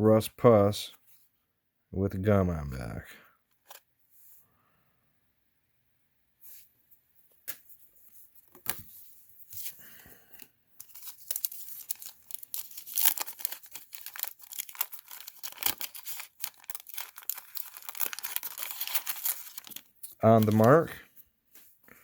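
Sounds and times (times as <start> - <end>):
wax paper crinkling and tearing: 10.8 - 21.0.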